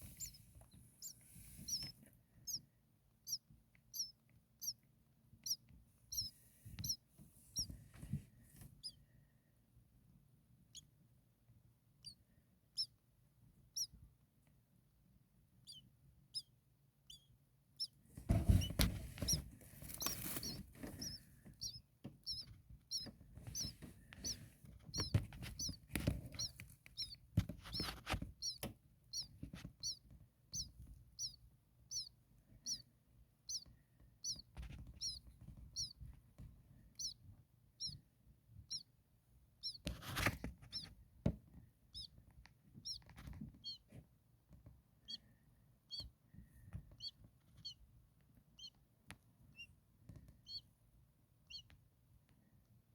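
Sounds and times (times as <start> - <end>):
nestlings begging chirps: 0.0 - 2.6, 3.2 - 4.8, 5.4 - 7.8, 8.8 - 9.0, 12.0 - 12.2, 12.8 - 13.0, 13.7 - 14.0, 15.6 - 36.0, 37.0 - 37.2, 37.8 - 38.0, 38.7 - 38.9, 39.6 - 40.9, 41.9 - 42.2, 42.8 - 43.9, 45.0 - 46.2, 46.9 - 47.8, 48.5 - 48.8, 49.5 - 49.7, 50.4 - 50.7, 51.5 - 51.7
rustling and knocking in nest: 18.1 - 30.0.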